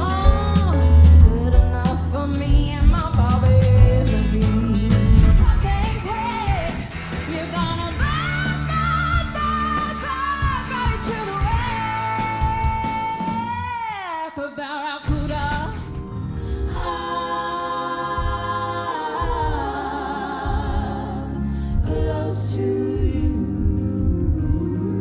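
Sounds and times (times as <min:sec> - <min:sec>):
steady drum beat: 0:00.0 - 0:13.6, 0:16.8 - 0:24.8
pop-rock band playing: 0:00.0 - 0:14.0, 0:15.0 - 0:22.3
woman singing: 0:00.0 - 0:15.9.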